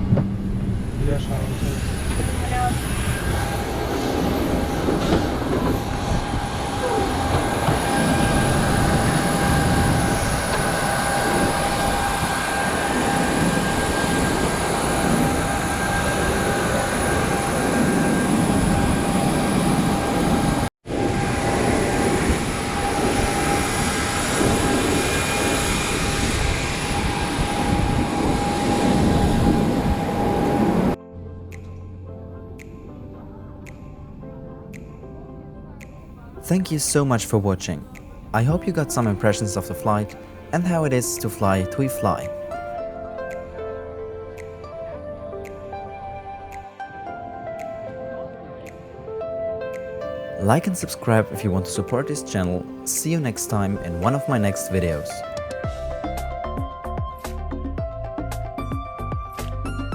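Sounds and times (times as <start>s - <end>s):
high whine: 0.0s - 31.0s.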